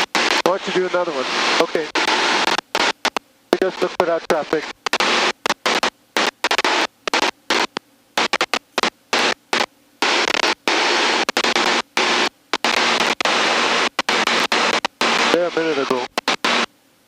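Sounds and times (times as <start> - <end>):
cockpit rushing hiss over intercom: 0.3 - 2.5, 11.0 - 16.7.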